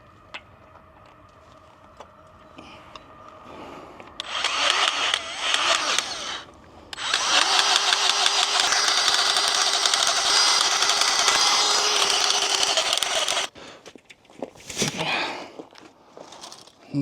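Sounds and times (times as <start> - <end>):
power tool motor running: 4.2 - 13.5
fast rattle: 7.0 - 13.5.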